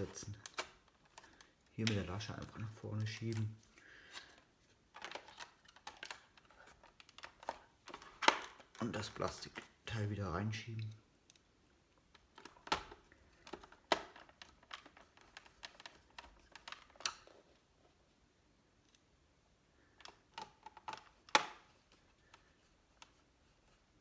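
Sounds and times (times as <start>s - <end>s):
plastic laptop case clicking: 4.2s - 8.8s, 12.2s - 17.4s, 20.0s - 22.4s.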